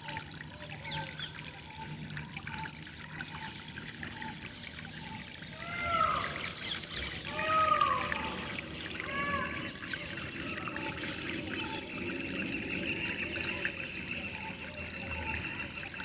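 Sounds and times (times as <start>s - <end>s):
water trickling and splashing: 0.0s - 16.0s
birds calling: 3.7s - 12.1s.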